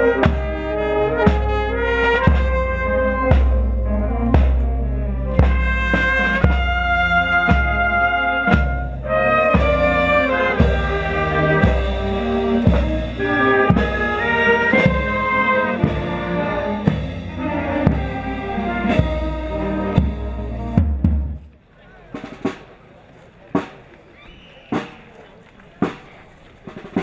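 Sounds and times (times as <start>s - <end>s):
brass band playing: 0.0s - 21.5s
bass drum beats: 2.2s - 21.4s.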